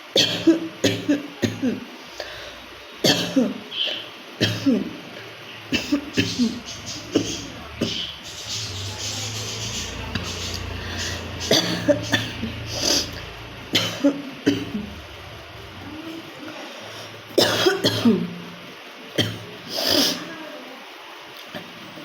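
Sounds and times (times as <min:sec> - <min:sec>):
woman coughing: 0:00.2 - 0:01.8, 0:03.1 - 0:03.6, 0:04.4 - 0:04.9, 0:05.7 - 0:07.4, 0:11.4 - 0:13.0, 0:13.7 - 0:14.9, 0:17.4 - 0:18.3.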